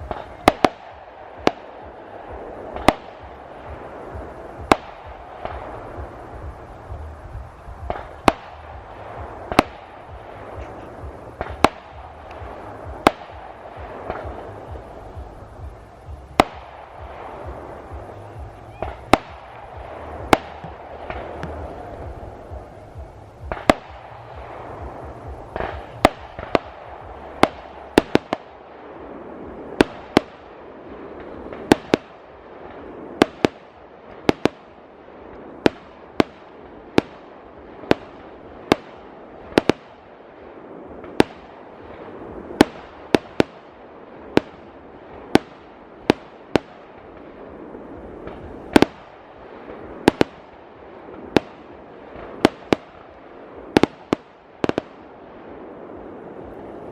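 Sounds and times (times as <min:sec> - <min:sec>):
continuous hiss: 0:00.0 - 0:56.9
fireworks bangs: 0:00.0 - 0:56.9.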